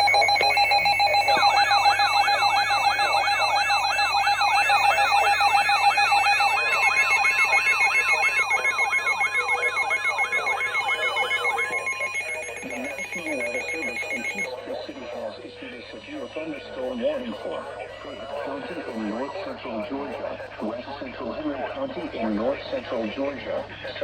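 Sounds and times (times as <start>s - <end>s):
steady alert tones: 0.0s - 15.3s
siren-like warble: 0.0s - 19.6s
rapid pulsing beeps: 0.0s - 20.8s.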